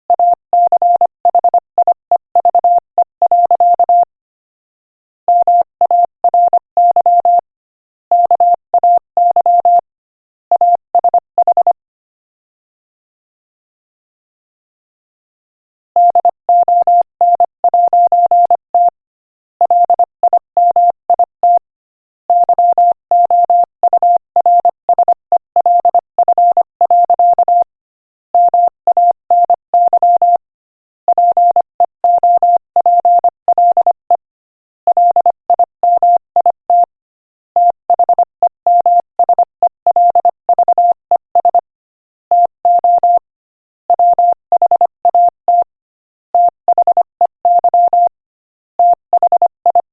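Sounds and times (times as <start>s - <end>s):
morse code beeps: 0.2s - 4.1s, 5.3s - 7.4s, 8.1s - 9.8s, 10.5s - 11.7s, 16.0s - 19.0s, 19.7s - 21.7s, 22.3s - 27.7s, 28.4s - 30.4s, 31.1s - 34.2s, 34.9s - 37.0s, 37.6s - 41.7s, 42.3s - 43.3s, 43.9s - 45.7s, 46.4s - 48.2s, 48.8s - 49.9s.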